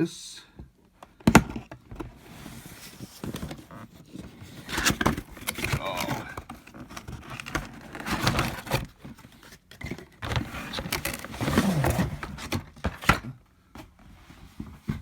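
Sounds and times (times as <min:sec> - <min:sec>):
cardboard packaging rustling: 0:02.0 - 0:13.2.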